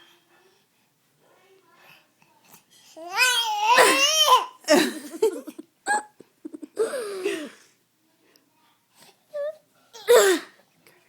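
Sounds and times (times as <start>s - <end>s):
baby making pretend coughs: 3.6s - 4.5s, 10.0s - 10.6s.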